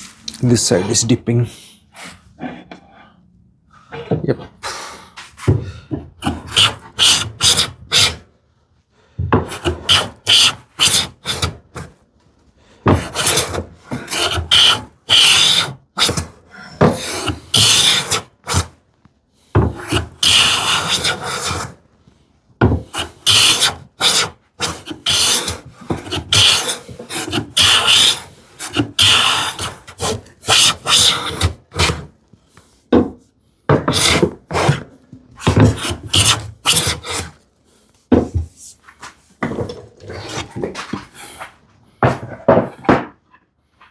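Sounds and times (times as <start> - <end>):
hand plane shaving wood: 5.2 - 8.3, 9.4 - 12.0, 12.6 - 18.8, 19.5 - 21.8, 22.6 - 33.1, 33.7 - 42.7.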